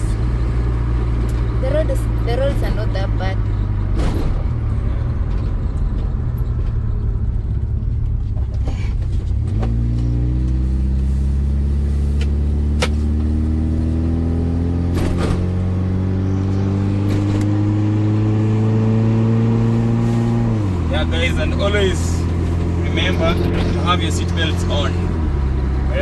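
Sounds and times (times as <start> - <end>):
car engine accelerating: 0.0 - 26.0
road rumble: 0.0 - 26.0.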